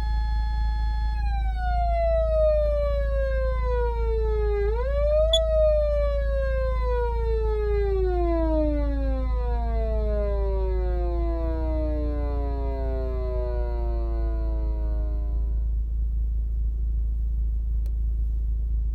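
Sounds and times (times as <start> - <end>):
steady low hum: 0.0 - 18.9
click: 17.8 - 18.0.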